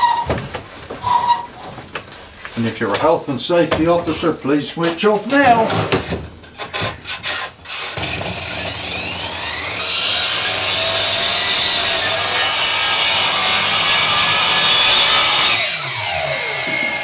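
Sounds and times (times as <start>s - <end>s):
circular saw cutting wood: 7.7s - 17.0s.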